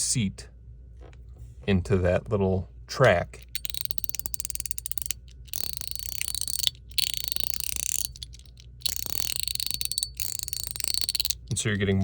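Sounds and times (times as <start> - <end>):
plastic slider fidget clicking: 3.4 - 11.4.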